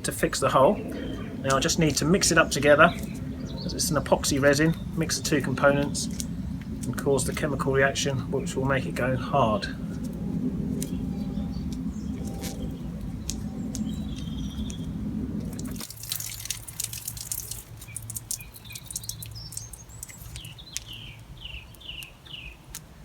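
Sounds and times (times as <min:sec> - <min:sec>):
low hum: 0:00.0 - 0:17.4
bird chirping: 0:00.0 - 0:22.8
water dripping from pipe: 0:00.3 - 0:08.0, 0:09.9 - 0:22.9.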